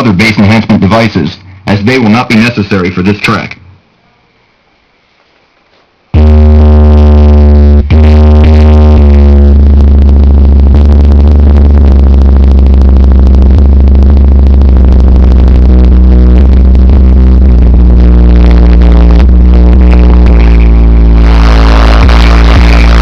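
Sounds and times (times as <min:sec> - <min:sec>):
distorted sub-bass tone: 0:06.0 - 0:23.0.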